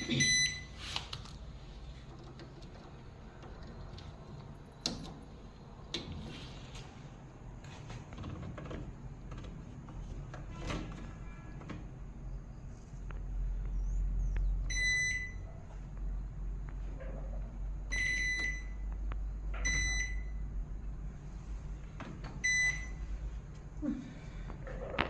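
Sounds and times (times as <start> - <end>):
washing machine short high beeps: 0.0 - 0.8, 14.7 - 15.4, 17.9 - 18.8, 19.6 - 20.4, 22.4 - 23.0
low steady hum: 11.0 - 25.0.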